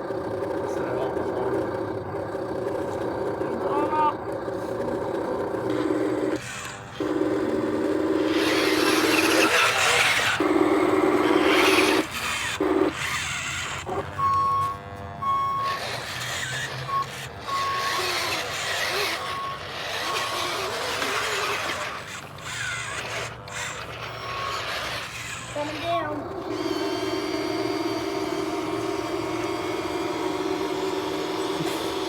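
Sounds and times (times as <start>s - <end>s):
electronic reversing beeper: 13.8s - 20.7s
truck horn blasts: 14.0s - 16.0s.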